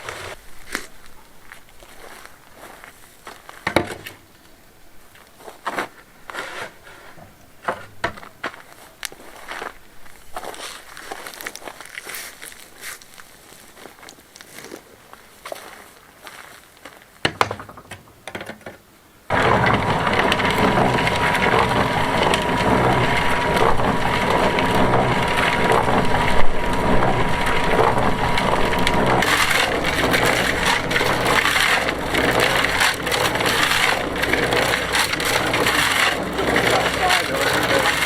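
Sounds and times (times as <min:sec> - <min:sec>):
concrete mixer grinding rattle: 0:19.3 - 0:38.0
pulsing motor rumble: 0:19.3 - 0:38.0.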